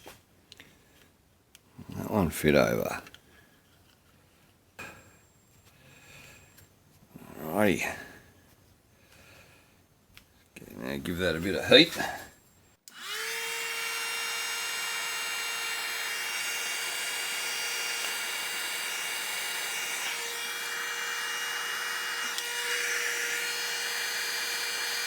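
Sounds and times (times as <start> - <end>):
heat gun fan whine: 12.9 - 25.0.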